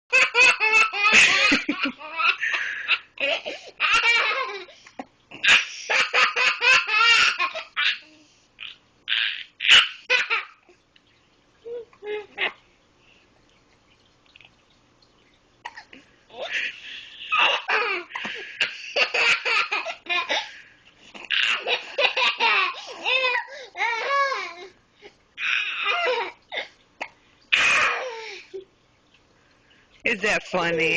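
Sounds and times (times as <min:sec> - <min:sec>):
small child laughing: 0:00.1 - 0:04.7.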